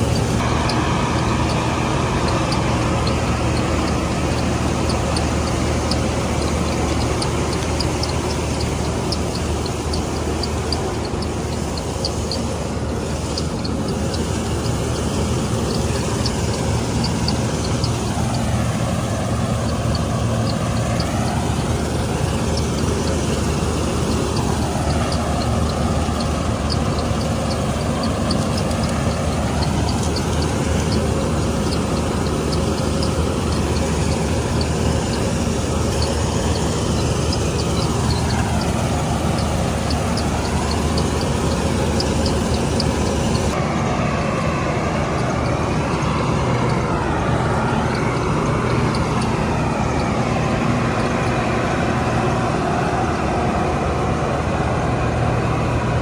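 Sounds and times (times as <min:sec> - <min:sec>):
diesel engine running: 0:00.0 - 0:56.0
machinery ticking: 0:00.0 - 0:56.0.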